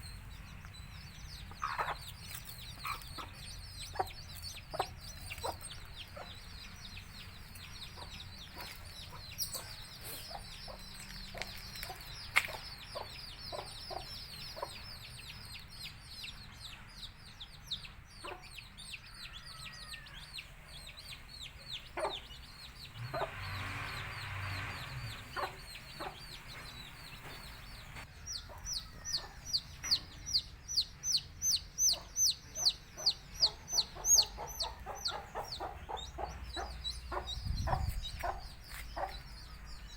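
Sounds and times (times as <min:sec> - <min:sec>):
chicks peeping: 0:00.0 - 0:39.9
hen clucking: 0:00.7 - 0:15.0, 0:20.7 - 0:30.0, 0:31.5 - 0:39.7.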